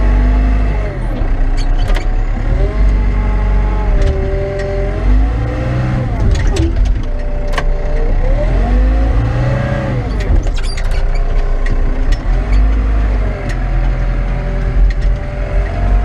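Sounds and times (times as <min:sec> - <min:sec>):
wheel loader diesel engine: 0:00.0 - 0:16.0
sharp clanks and clicks: 0:06.1 - 0:08.1, 0:10.1 - 0:15.8.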